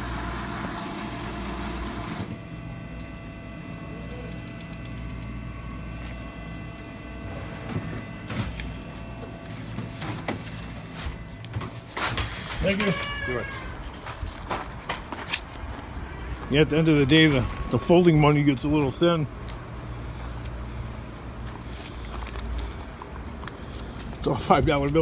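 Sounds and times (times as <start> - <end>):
small machine humming: 0.0 - 11.6.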